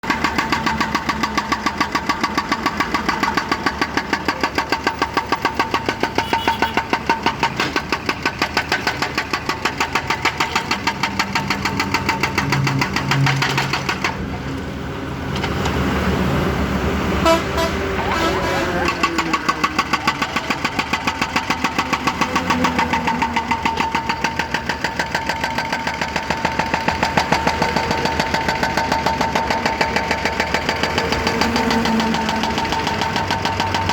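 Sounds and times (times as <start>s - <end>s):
hydraulic breaker hammer pounding: 0.0s - 14.4s, 18.8s - 33.9s
diesel engine running: 0.0s - 33.9s.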